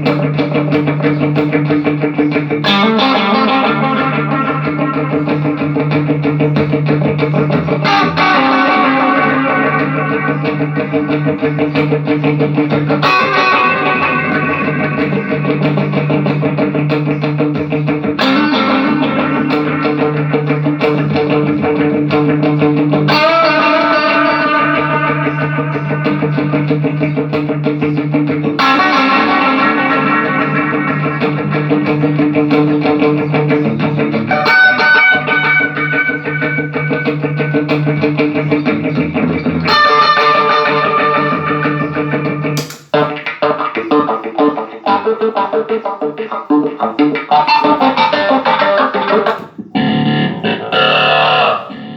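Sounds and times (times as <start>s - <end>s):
electric guitar chords: 0.0s - 51.9s
steady low guitar note: 49.8s - 51.9s.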